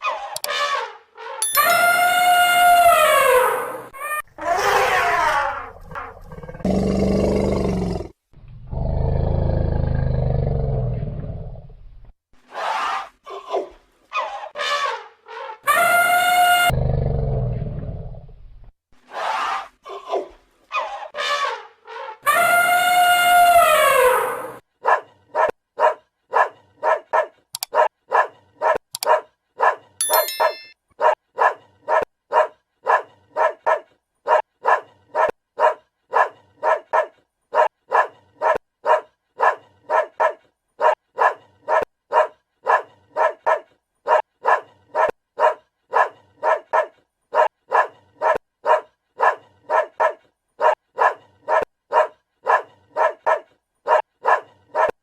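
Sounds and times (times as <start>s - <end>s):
long rising and falling animal call: 1.7s - 6.7s, 21.2s - 24.6s
dog barking: 24.8s - 30.0s, 31.0s - 55.0s.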